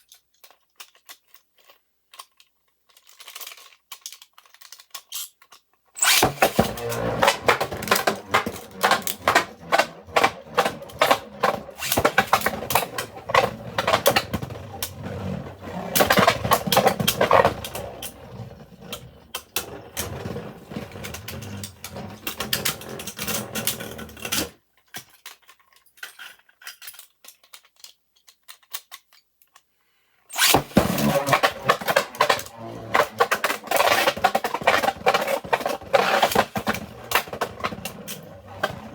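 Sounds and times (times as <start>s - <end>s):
spinning tops clattering and scraping: 6.0s - 24.5s.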